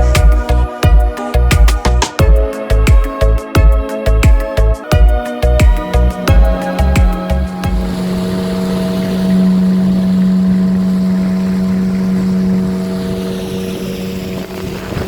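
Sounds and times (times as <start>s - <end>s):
boat engine drone: 0.0s - 15.0s
water wash behind boat: 5.4s - 15.0s.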